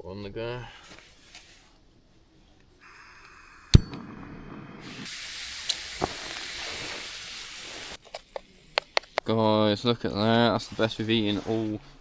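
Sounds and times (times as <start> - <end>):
gas stove burner hissing: 4.8 - 8.0.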